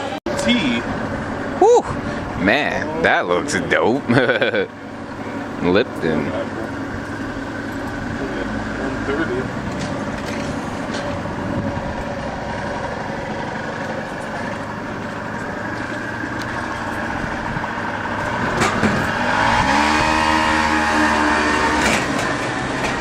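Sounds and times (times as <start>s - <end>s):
traffic background: 0.0s - 23.0s
vehicle pulling away: 0.3s - 23.0s.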